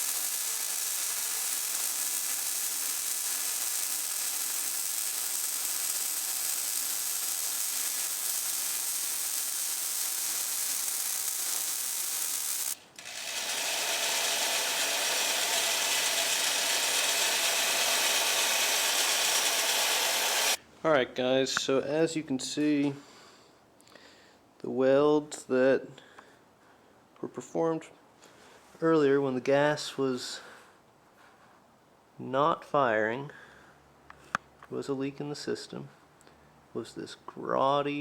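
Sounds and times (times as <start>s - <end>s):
welding arc crackling hiss: 0.0s - 20.6s.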